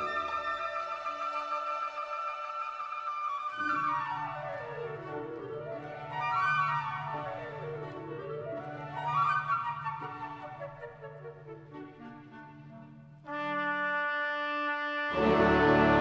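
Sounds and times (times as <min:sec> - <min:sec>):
orchestral music: 0:10.4 - 0:16.0.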